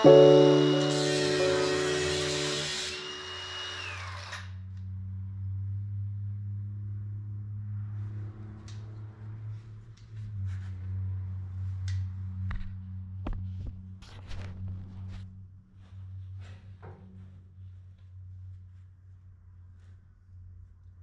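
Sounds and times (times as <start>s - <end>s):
background music: 0.0s - 3.4s.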